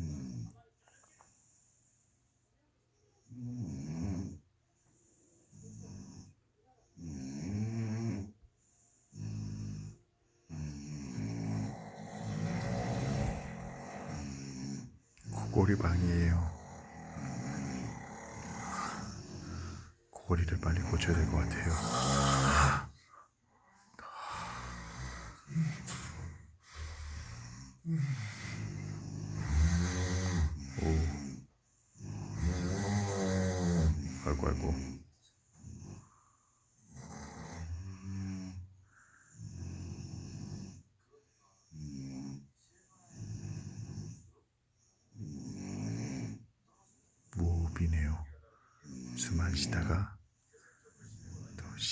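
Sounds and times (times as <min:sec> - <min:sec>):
person snoring loudly: 0:09.2 - 0:19.9, 0:20.6 - 0:23.1, 0:24.0 - 0:31.4, 0:32.0 - 0:35.0.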